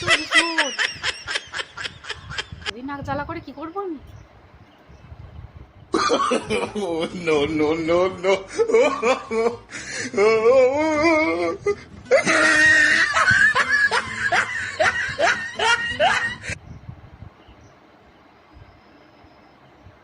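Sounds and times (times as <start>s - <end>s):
woman laughing: 0.0s - 2.8s, 6.0s - 16.6s.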